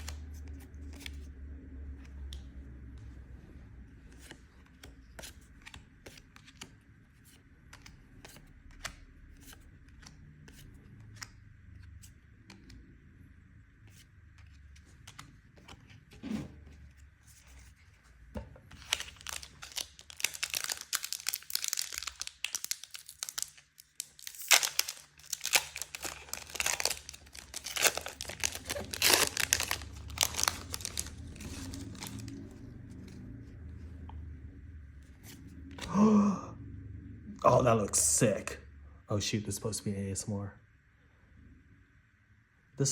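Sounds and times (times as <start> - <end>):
foil wrapper tearing and crinkling: 18.8 - 32.4.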